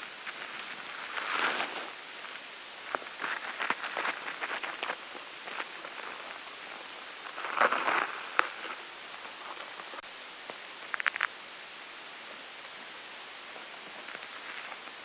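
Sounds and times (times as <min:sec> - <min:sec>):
light ticks and crackles: 0:00.0 - 0:11.4
steady hiss: 0:00.0 - 0:15.0.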